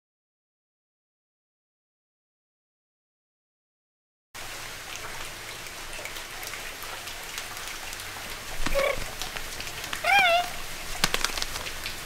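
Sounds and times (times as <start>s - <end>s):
rain patter: 4.4s - 12.0s.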